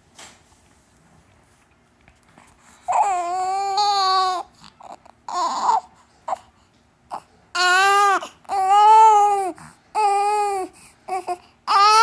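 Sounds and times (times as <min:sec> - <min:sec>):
newborn baby crying: 0:02.9 - 0:06.5, 0:07.1 - 0:12.0.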